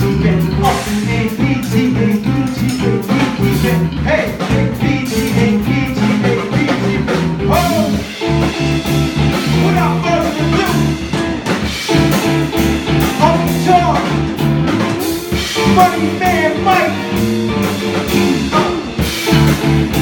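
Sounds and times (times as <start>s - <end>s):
live band playing a groove: 0.0s - 20.0s.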